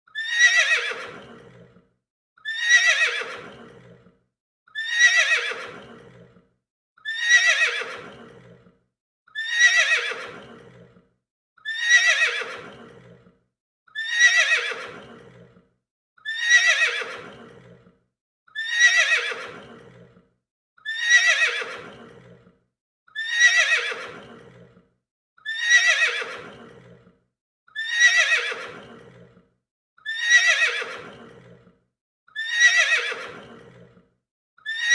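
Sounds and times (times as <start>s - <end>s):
horse whinnying: 0.2s - 1.7s, 2.4s - 4.0s, 4.8s - 6.4s, 7.0s - 8.6s, 9.4s - 10.9s, 11.6s - 13.2s, 14.0s - 15.5s, 16.2s - 17.8s, 18.6s - 20.1s, 20.8s - 22.4s, 23.2s - 24.7s, 25.4s - 27.1s, 27.8s - 29.2s, 30.1s - 31.6s, 32.4s - 33.8s.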